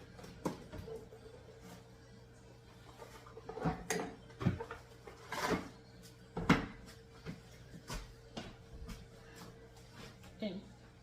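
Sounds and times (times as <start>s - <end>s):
faint steady hum: 0.0s - 11.0s
containers and utensils clattering: 2.8s - 6.8s.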